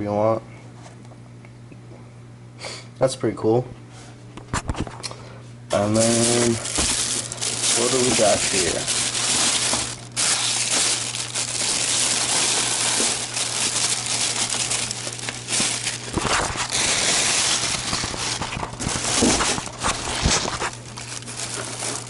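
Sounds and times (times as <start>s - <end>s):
packaging crinkling and rustling: 5.7s - 22.0s.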